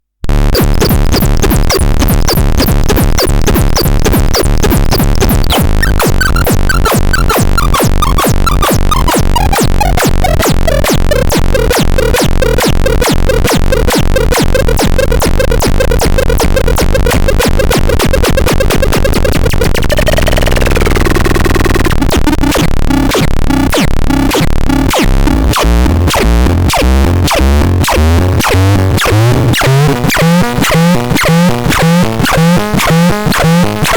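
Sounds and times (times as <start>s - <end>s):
electronic sweep: 0.3s - 16.9s, 17.6s - 33.9s
electronic device pulsing buzz: 0.3s - 33.9s
sliding electronic tone: 0.3s - 33.9s.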